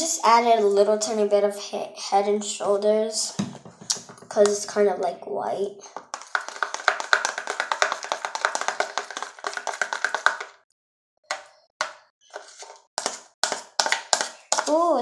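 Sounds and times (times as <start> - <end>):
utensil stirring sticky slime: 5.9 - 10.6, 11.3 - 15.0.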